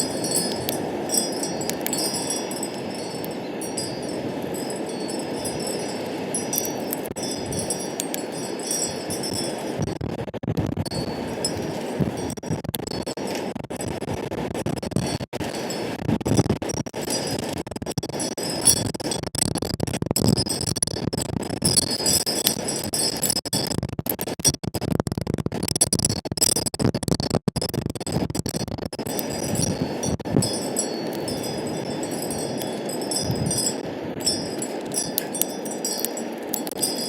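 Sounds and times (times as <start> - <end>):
wind chimes tinkling: 0.0 - 9.9, 10.9 - 12.4, 18.2 - 18.8, 29.1 - 37.0
wind rumbling on microphone: 0.0 - 37.0.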